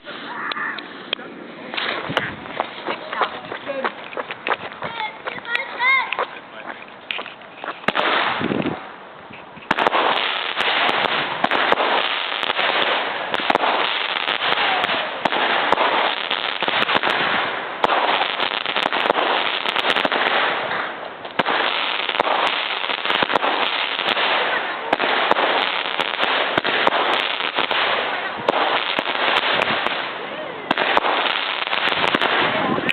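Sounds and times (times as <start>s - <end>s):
fireworks battery firing: 7.1s - 32.9s.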